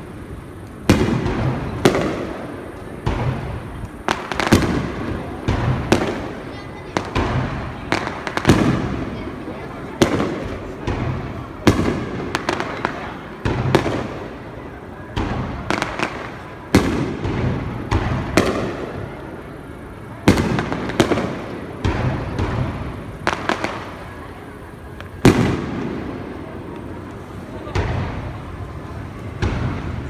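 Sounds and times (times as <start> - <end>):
fireworks booming: 0.0 - 30.0
fireworks crackling pops: 0.0 - 30.0.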